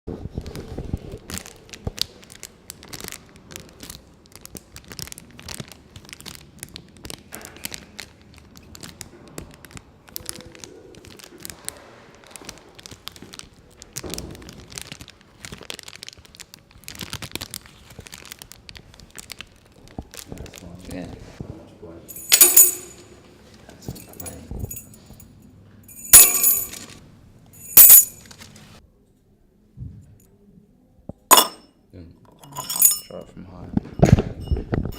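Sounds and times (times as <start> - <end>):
crinkling and crackling: 0.1 - 25.2, 27.6 - 28.8, 32.3 - 34.9
small hard objects jangling: 22.1 - 23.1, 25.9 - 27.0, 27.6 - 28.4, 31.3 - 31.6, 32.3 - 33.3.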